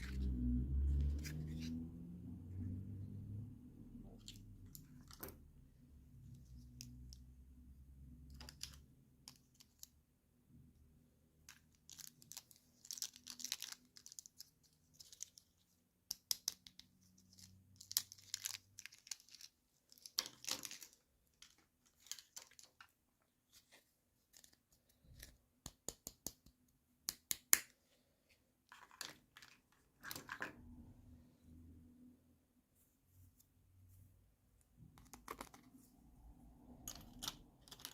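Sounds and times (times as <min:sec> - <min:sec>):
plastic pieces clicking and tapping: 0:08.3 - 0:10.0, 0:15.0 - 0:22.9, 0:24.3 - 0:27.7, 0:34.9 - 0:35.7, 0:36.8 - 0:37.9.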